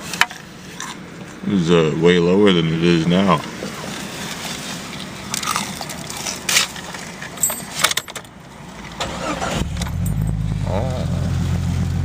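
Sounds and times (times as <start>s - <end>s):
handling clicks and rustles: 3.4s - 10.5s
keys jangling: 7.4s - 8.3s
car engine running: 8.4s - 12.0s.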